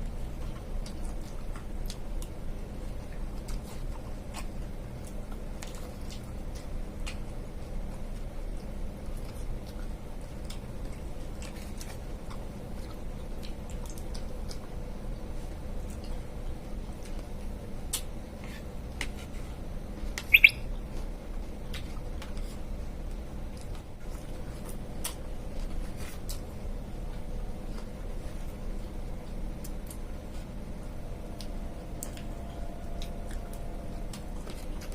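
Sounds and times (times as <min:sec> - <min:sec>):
person chewing food: 0:00.1 - 0:19.4
high two-part chirp: 0:20.3 - 0:20.7.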